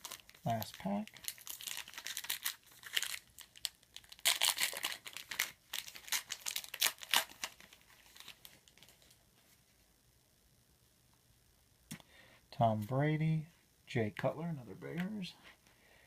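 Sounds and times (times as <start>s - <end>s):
wrapper tearing and crinkling: 0.0s - 9.2s.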